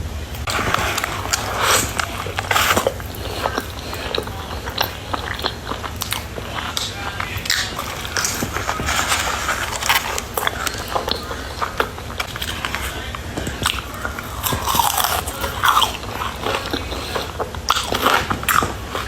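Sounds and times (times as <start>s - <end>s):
crunchy chewing: 0.3s - 19.0s.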